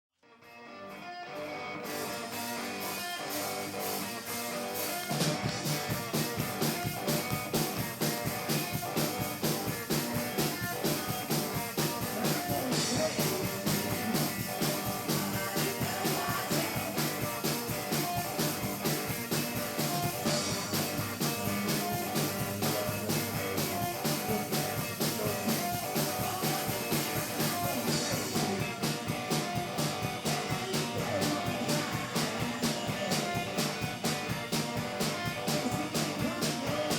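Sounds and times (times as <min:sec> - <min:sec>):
electric guitar: 0:00.2 - 0:36.9
electric blues band playing: 0:00.3 - 0:36.9
driving drum beat: 0:01.8 - 0:36.9.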